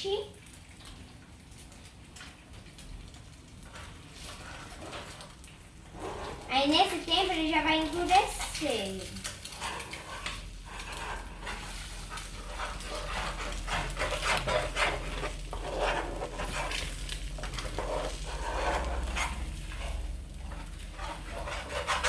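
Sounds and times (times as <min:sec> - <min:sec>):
eggs sizzling in oil: 0:00.0 - 0:22.0
spoon scraping a frying pan: 0:05.9 - 0:06.9, 0:07.9 - 0:22.0.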